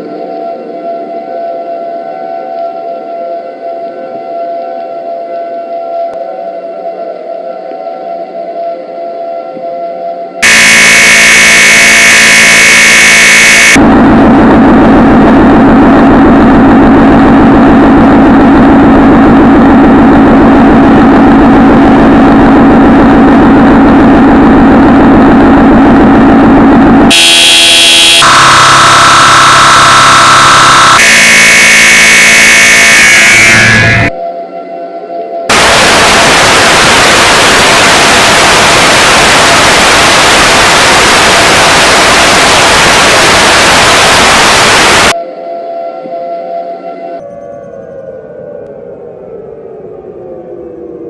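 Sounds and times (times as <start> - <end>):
distorted blaring horn-like tones: 0.0 - 47.3.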